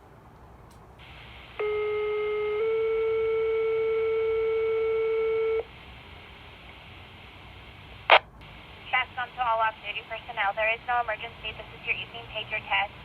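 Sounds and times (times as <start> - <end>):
radio carrier hiss: 1.0 - 1.8, 5.6 - 13.0.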